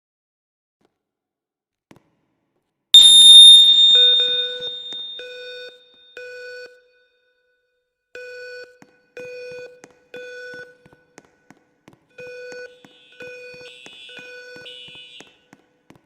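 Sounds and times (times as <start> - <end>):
pulsing alarm horns: 3.0 - 5.2
piercing high alarm tone: 3.0 - 5.4.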